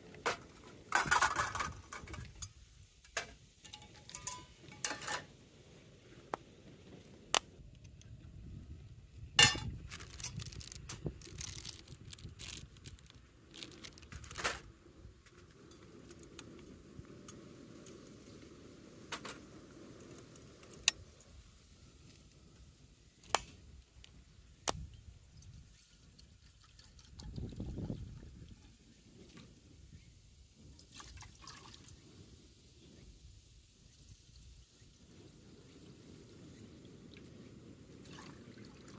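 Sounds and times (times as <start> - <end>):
rustling: 9.4 - 14.7.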